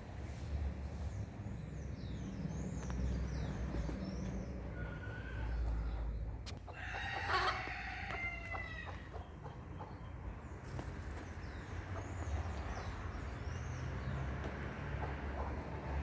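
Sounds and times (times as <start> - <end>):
small birds chirping: 1.0 - 16.0
rooster crowing: 6.7 - 9.1.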